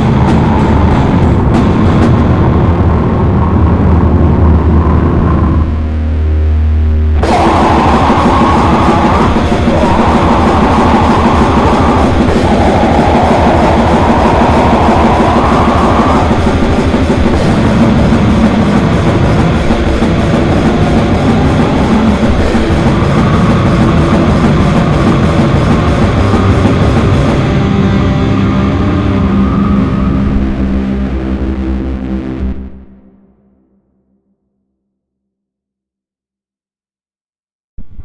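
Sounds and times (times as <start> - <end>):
fast drum kit: 0.0 - 2.6, 7.2 - 27.8
distorted guitars: 0.0 - 33.1.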